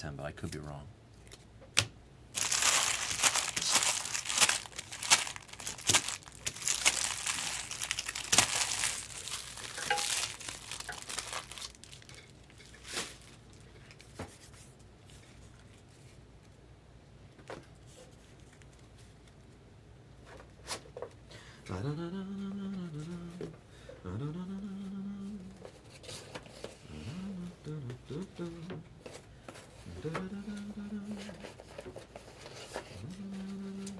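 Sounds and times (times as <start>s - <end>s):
plastic wrapper crinkling and tearing: 2.4s - 14.0s.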